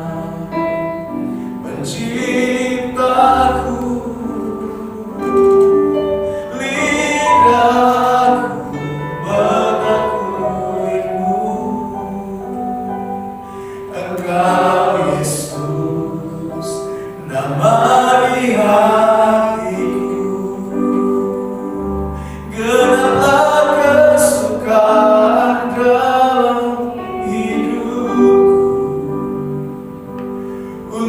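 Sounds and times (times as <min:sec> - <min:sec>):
group singing worship song: 0:00.0 - 0:12.7, 0:13.8 - 0:29.7.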